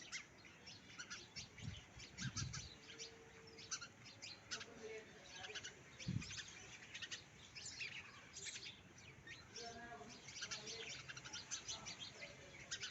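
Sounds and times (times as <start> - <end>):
sparrows chirping: 0.0 - 12.9.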